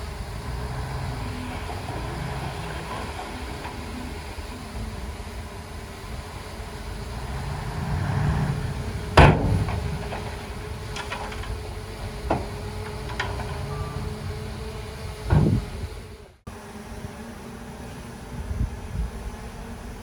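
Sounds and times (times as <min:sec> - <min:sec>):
diesel engine running: 0:00.0 - 0:20.0
loud bang: 0:08.4 - 0:11.5.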